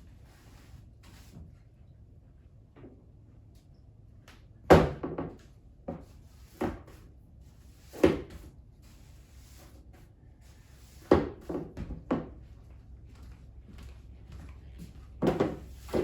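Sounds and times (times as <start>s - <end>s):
household knocks and thuds: 15.2s - 16.0s.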